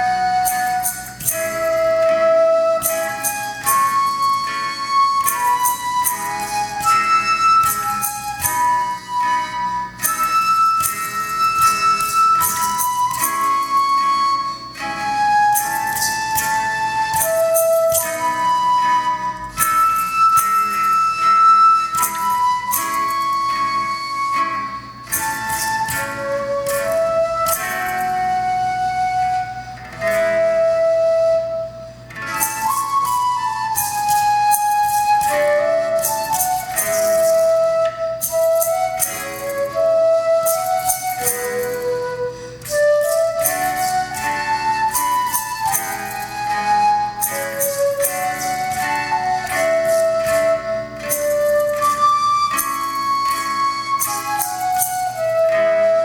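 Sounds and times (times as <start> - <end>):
flute melody: 0.0 - 56.0
light percussion strokes: 0.0 - 56.0
live band: 0.0 - 56.0.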